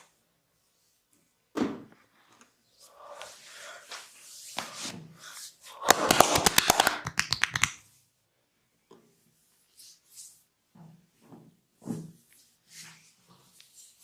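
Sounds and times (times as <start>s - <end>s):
hands rubbing oiled skin: 3.2s - 7.8s
hand slaps on skin: 5.8s - 7.8s.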